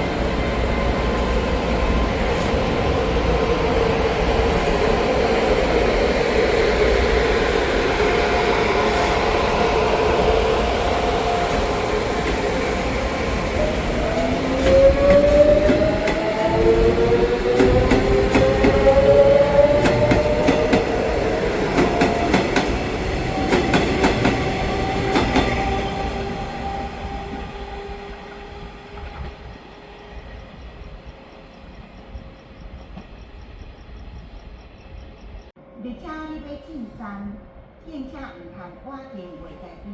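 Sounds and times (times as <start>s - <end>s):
electric train motors whining: 3.8s - 29.3s.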